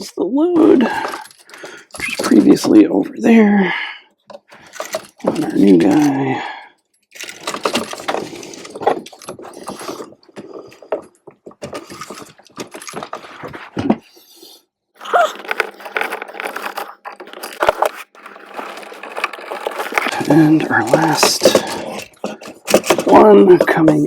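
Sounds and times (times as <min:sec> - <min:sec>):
clicks and rattles of handled outlet: 0:04.3 - 0:06.1, 0:07.1 - 0:10.1, 0:19.9 - 0:24.0.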